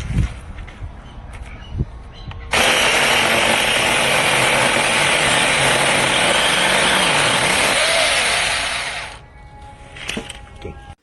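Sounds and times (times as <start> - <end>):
chainsaw cutting wood: 2.5 - 9.2.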